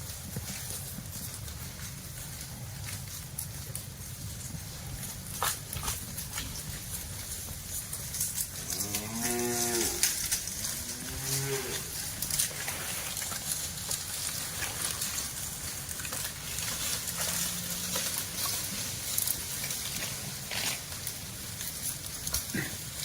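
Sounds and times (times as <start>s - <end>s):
background noise: 0.0s - 23.0s
cow mooing: 8.6s - 12.0s.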